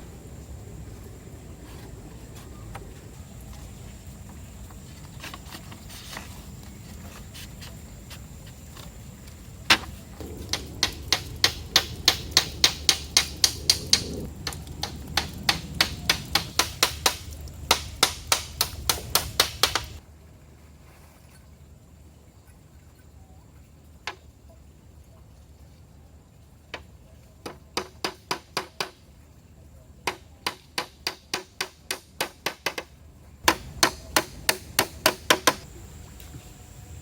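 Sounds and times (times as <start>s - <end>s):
hammer striking wood: 10.5s - 20.0s, 27.5s - 29.0s, 30.1s - 32.9s, 33.5s - 35.6s.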